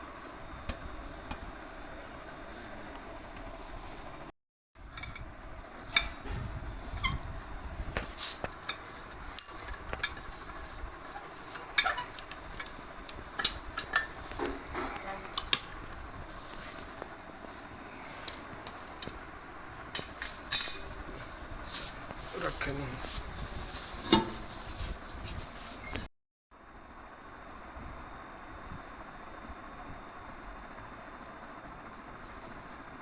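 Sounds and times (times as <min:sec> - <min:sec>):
metal tools clinking and knocking: 0:04.9 - 0:06.3, 0:08.1 - 0:16.0, 0:19.8 - 0:21.4.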